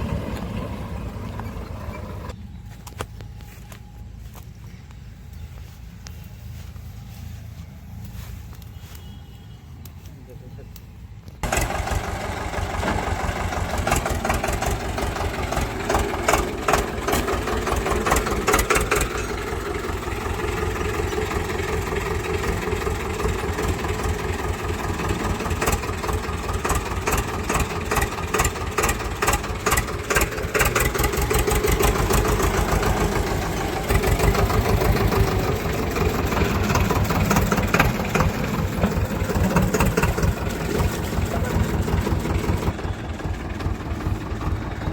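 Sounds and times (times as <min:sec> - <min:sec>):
tractor diesel engine running: 0:00.0 - 0:44.9.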